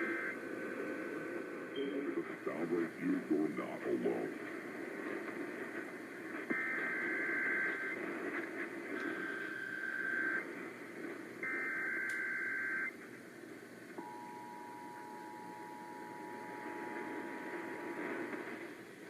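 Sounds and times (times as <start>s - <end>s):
radio static hiss: 0.0s - 19.0s.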